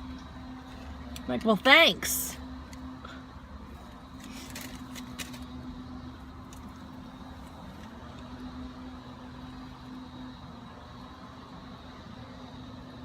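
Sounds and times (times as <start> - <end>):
light clicks and rustles: 4.1 - 5.6.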